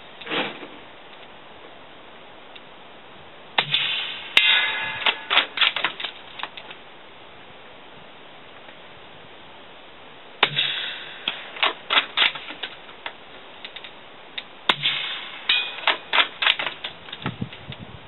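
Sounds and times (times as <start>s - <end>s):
suppressed rifle shots: 3.6s - 6.2s, 10.4s - 12.8s.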